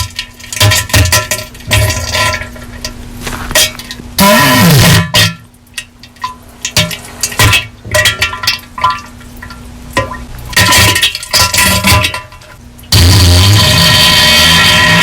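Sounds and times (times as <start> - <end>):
distorted wet sputters and splatters: 10.5 - 15.0.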